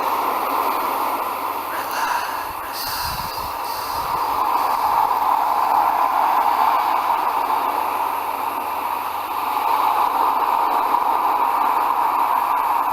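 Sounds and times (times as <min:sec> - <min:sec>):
ocean surf rushing: 0:00.3 - 0:08.9.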